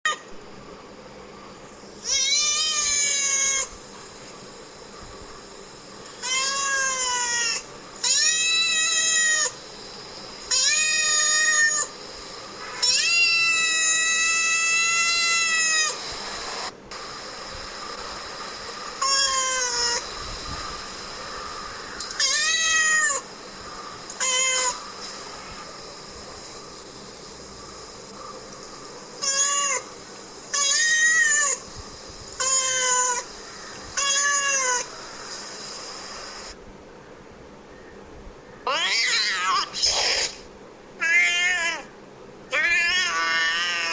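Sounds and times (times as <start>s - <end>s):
cat meowing: 2.0s - 3.7s, 6.2s - 9.6s, 10.5s - 11.9s, 12.7s - 16.0s, 19.0s - 20.0s, 22.1s - 23.3s, 24.2s - 24.8s, 29.2s - 29.9s, 30.5s - 31.6s, 32.4s - 33.3s, 34.0s - 34.9s, 41.0s - 41.9s, 42.5s - 43.9s.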